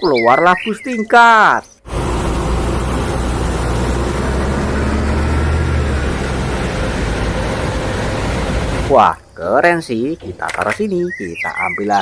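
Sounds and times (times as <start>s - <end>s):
bus engine humming: 1.8s - 10.6s.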